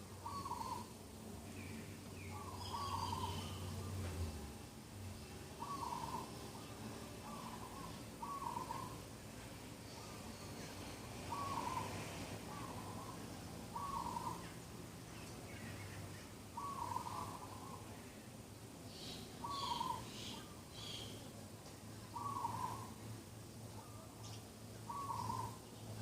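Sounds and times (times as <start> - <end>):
bird low call: 0.2 - 0.9, 1.6 - 3.9, 5.6 - 9.0, 11.3 - 14.6, 16.6 - 17.9, 18.9 - 21.2, 22.1 - 23.0, 23.8 - 25.6.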